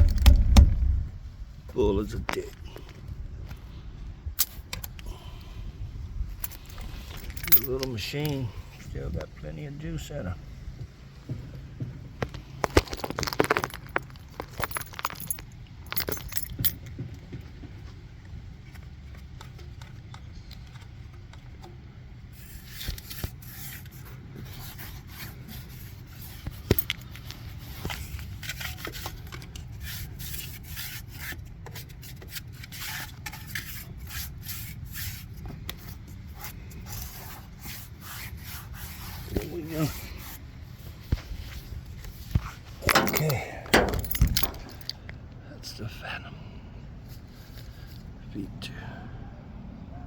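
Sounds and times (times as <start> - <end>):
light metallic clinks: 6.4 - 8.4, 42.8 - 45.1
objects scraping and clicking: 6.4 - 8.4, 12.2 - 16.8, 22.3 - 34.7, 41.0 - 45.0.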